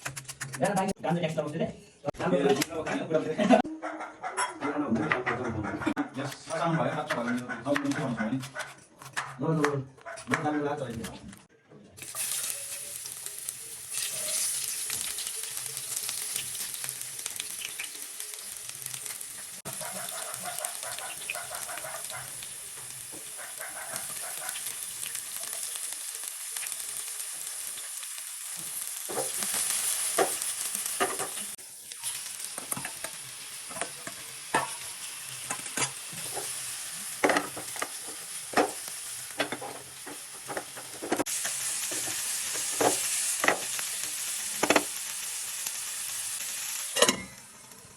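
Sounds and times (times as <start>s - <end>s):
noodles sizzling in a hot pan: 12.0s - 47.9s
spatula scraping a pan: 33.7s - 38.8s.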